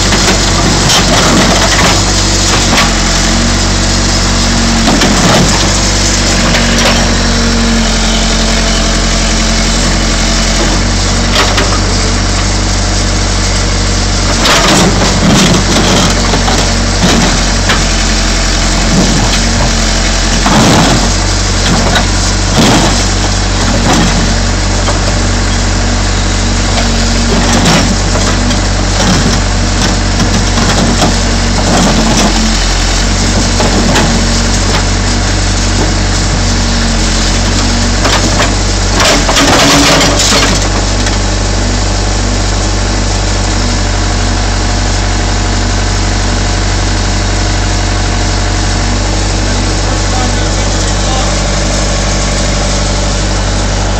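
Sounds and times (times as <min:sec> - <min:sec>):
metal crunching and cracking: 0:00.0 - 0:41.6
diesel engine running: 0:00.0 - 0:53.9.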